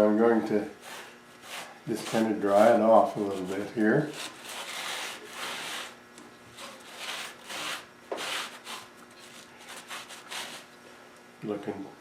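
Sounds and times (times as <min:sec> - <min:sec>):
cloth rag rubbing sandpaper: 0:00.8 - 0:06.0, 0:06.8 - 0:10.6.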